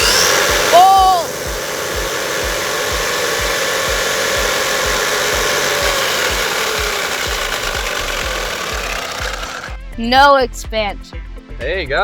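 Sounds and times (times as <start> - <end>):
electric motor whining: 0.0 - 9.9.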